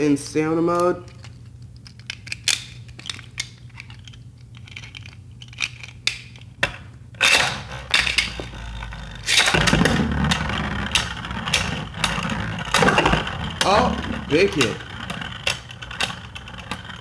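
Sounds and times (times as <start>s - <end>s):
spinning tops rattling and clashing: 7.2s - 17.0s
spinning tops launched with whir: 9.2s - 17.0s.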